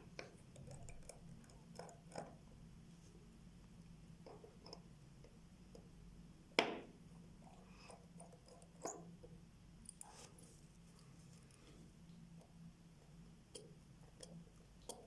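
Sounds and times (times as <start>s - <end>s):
small tools clicking on watch parts: 0.2s - 2.4s.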